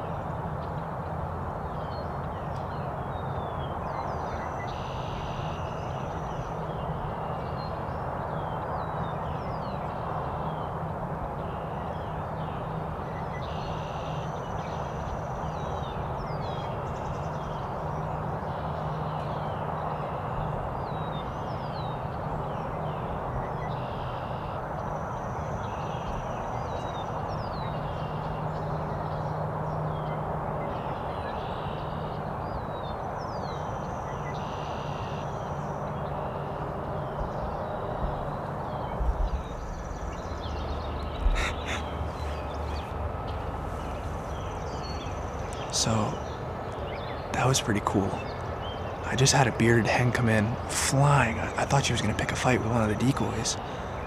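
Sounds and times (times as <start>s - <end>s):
bird song: 0.0s - 54.0s
songbirds chirping and whistling: 1.6s - 54.0s
steady rushing background noise: 35.4s - 54.0s.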